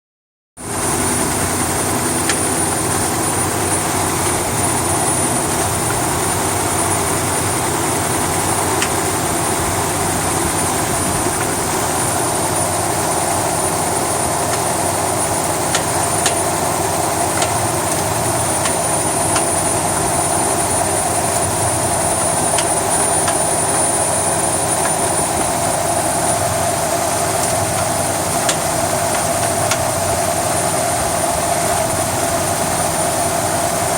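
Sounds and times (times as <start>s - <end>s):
car engine idling: 0.6s - 33.9s.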